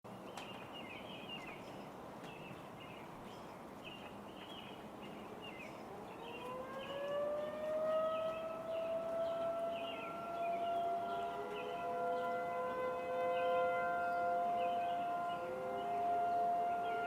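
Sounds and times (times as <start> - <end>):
outdoor background hiss: 0.1 - 17.0
small birds chirping: 0.1 - 17.0
tornado siren winding up: 5.9 - 17.0.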